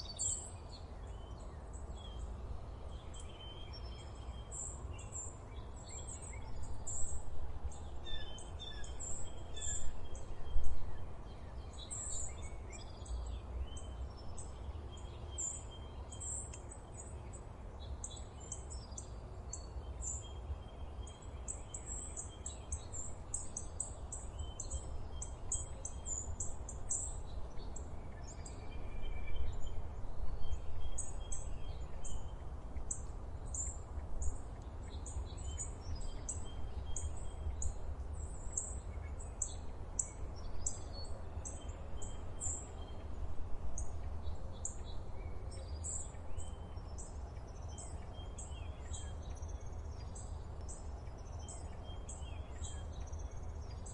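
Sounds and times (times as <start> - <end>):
small birds chirping: 0.0 - 43.2, 43.8 - 53.9.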